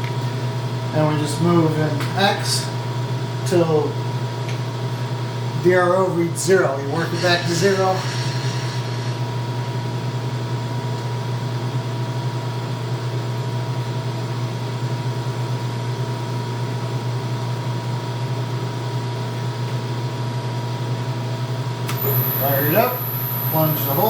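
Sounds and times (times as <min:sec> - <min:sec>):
machine hum with high tone: 0:05.4 - 0:11.4, 0:21.8 - 0:24.0.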